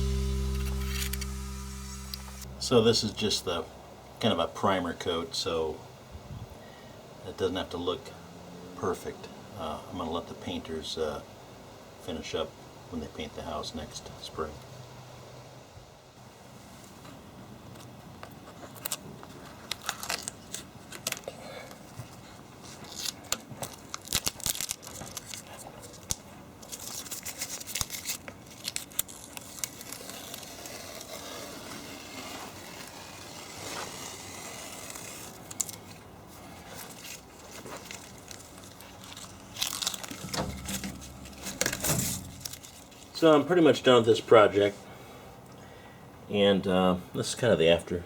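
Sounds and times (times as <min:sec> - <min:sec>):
rustling and scraping: 0:24.6 - 0:43.2.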